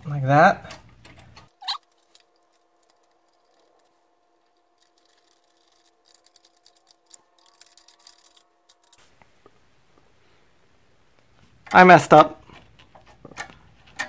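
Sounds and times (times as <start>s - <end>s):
small metal parts clicking: 0.6s - 9.0s.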